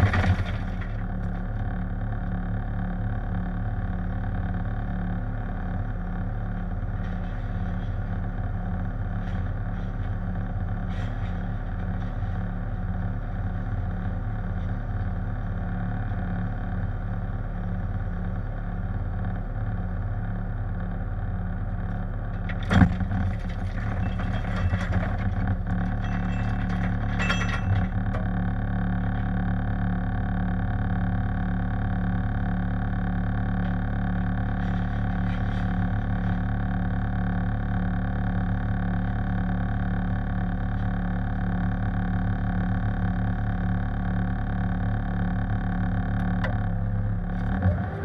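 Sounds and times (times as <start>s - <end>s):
diesel engine running: 0.0s - 48.0s
bucket clattering in shale: 22.5s - 28.3s.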